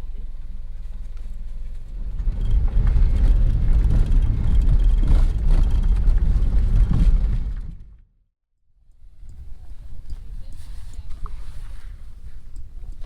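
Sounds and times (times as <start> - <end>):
car engine and tyres rumbling: 0.0 - 8.0.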